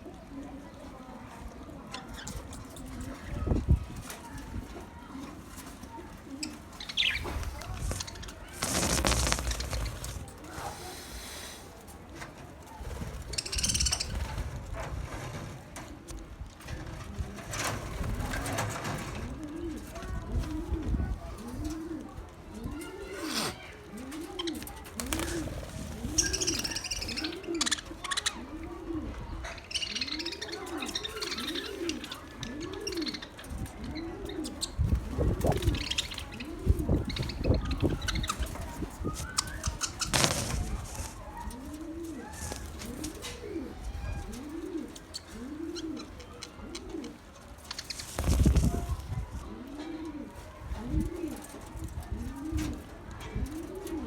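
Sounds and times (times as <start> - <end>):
small birds chirping: 1.8 - 11.8, 12.6 - 14.7, 22.7 - 49.5
pigeon cooing: 5.0 - 12.3, 16.8 - 54.0.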